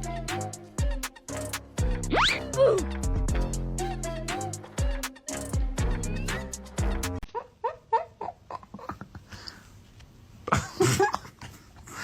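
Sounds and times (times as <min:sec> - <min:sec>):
music: 0:00.0 - 0:07.2.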